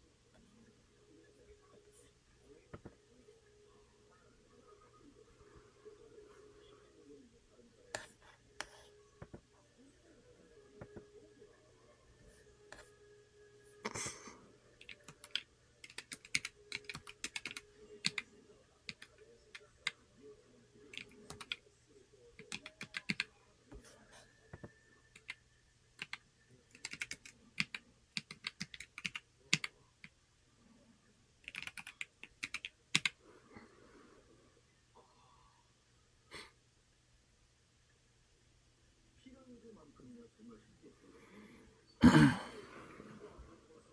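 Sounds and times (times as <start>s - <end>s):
mechanical keyboard typing: 14.8s - 18.2s, 20.9s - 21.6s, 22.4s - 23.2s, 26.0s - 29.7s, 31.4s - 33.2s.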